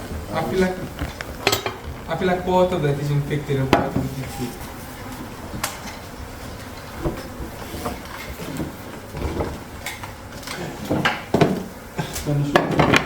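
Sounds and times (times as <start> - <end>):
hands and tools knocking and scraping: 0.0 - 4.4, 5.5 - 11.8.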